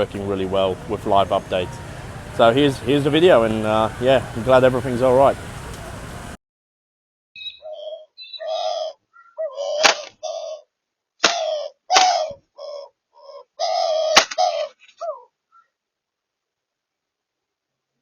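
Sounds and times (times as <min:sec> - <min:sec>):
harsh bird calls: 0:07.4 - 0:15.7.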